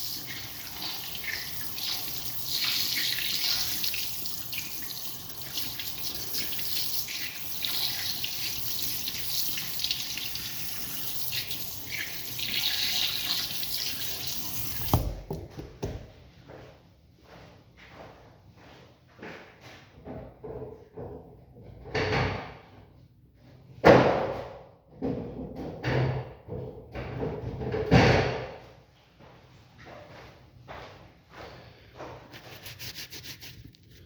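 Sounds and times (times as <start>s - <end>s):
water running: 0.0s - 16.0s
knocks: 14.9s - 16.2s.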